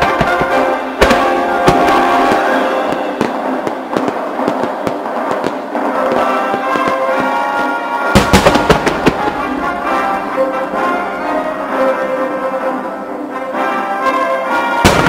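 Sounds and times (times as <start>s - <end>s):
loud firework booms: 0.0s - 11.6s, 14.8s - 15.0s
fireworks bursting: 0.0s - 15.0s
fireworks crackles: 0.0s - 15.0s
orchestral music: 0.0s - 15.0s.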